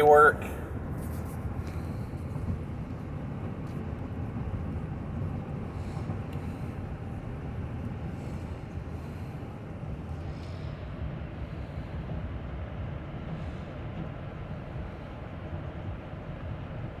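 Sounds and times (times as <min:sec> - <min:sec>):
road and drivetrain rumble: 0:00.1 - 0:11.8.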